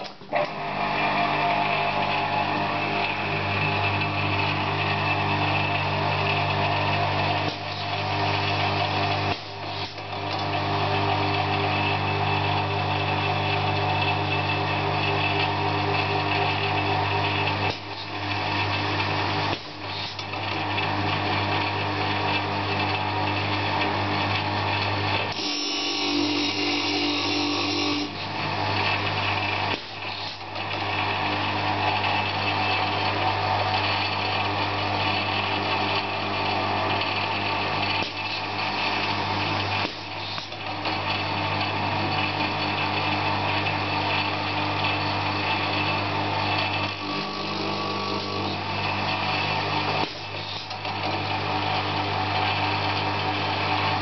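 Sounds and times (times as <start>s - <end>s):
motor hum: 0.0s - 54.0s
sharpening machine grinding: 15.3s - 20.4s, 25.2s - 31.2s, 36.8s - 42.6s, 45.0s - 52.4s.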